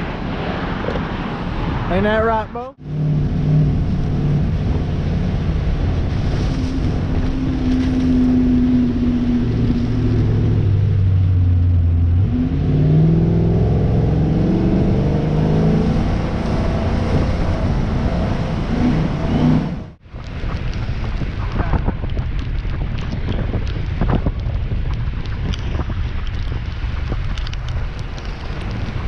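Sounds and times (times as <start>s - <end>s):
diesel engine revving: 2.8s - 20.0s.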